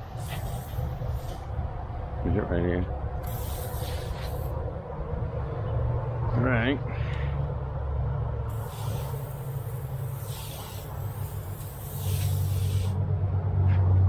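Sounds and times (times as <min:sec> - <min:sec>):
low engine hum: 0:00.0 - 0:14.0
spray nozzle hissing: 0:00.1 - 0:01.4, 0:03.2 - 0:04.6, 0:08.5 - 0:13.0.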